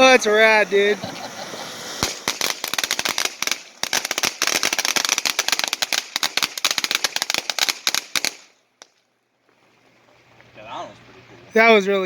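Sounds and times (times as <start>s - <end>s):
firework crackling pops: 1.3s - 9.0s.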